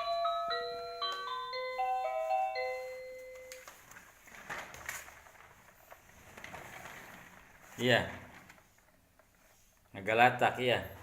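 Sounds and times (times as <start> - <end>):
tinkling electronic melody: 0.0 - 3.6.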